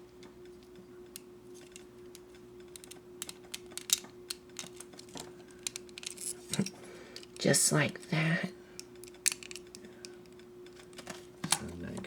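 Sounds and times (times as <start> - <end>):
faint steady hum: 0.0 - 12.0
plastic parts clicking: 1.6 - 7.4, 8.8 - 11.8.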